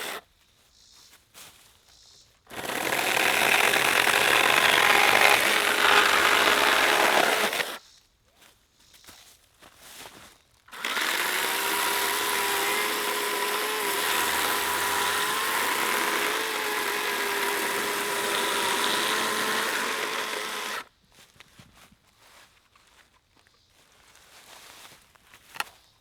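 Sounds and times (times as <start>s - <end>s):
electric chainsaw whining: 0.0s - 0.2s, 2.5s - 7.8s, 10.7s - 20.9s.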